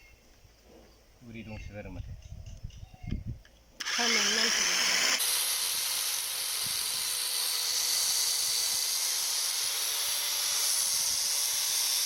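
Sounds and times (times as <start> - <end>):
electric chainsaw running: 3.8 - 12.0.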